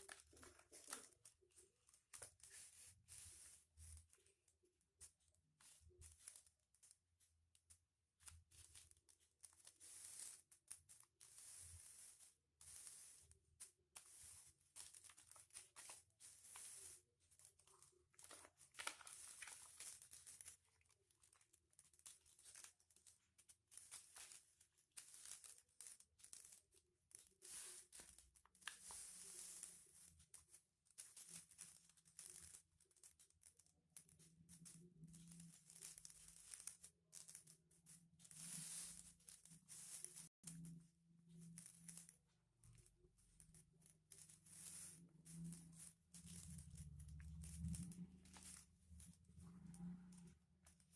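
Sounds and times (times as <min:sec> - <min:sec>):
foil paper crinkling: 0:00.0 - 0:04.2, 0:14.0 - 0:33.2.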